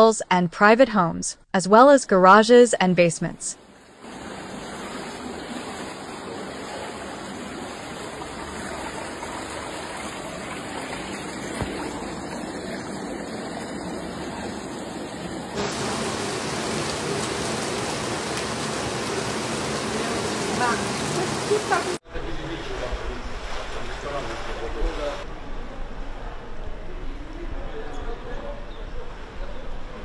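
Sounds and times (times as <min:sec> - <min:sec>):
floodwater rushing: 0:03.7 - 0:25.3.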